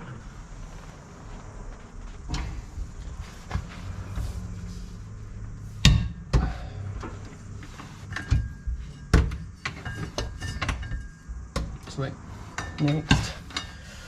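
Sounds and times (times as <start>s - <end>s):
hand tools knocking on metal: 12.5s - 13.8s.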